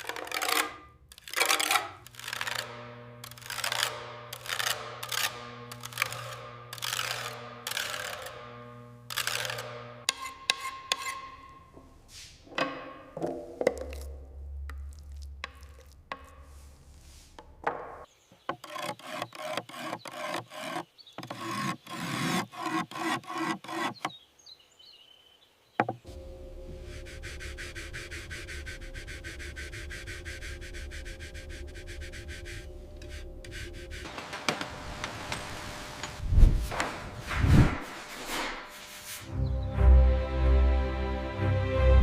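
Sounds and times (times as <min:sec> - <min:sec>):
hand tool rasping wood: 0:00.0 - 0:11.5, 0:18.5 - 0:24.2, 0:26.1 - 0:35.4.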